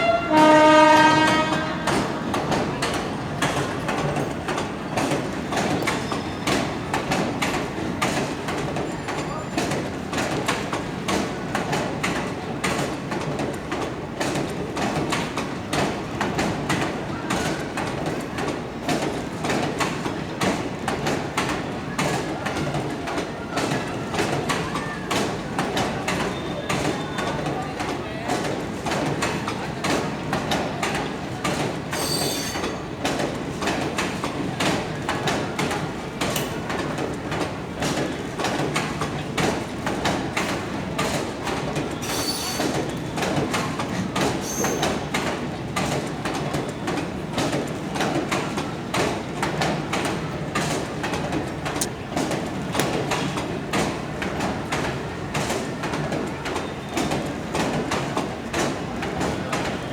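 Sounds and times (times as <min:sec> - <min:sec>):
train wheels clattering over rail joints: 0:00.0 - 0:59.9
high wheel squeal: 0:32.0 - 0:32.8, 0:42.0 - 0:42.8.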